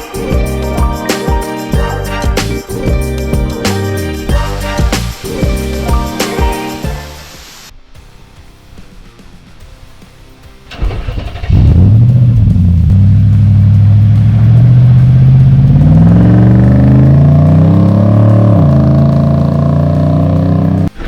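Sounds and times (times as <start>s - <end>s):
car engine accelerating: 10.7s - 21.0s.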